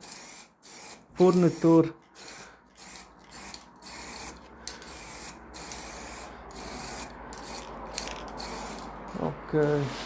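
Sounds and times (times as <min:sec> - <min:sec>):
spray gun hissing: 0:00.0 - 0:07.6, 0:08.4 - 0:08.8.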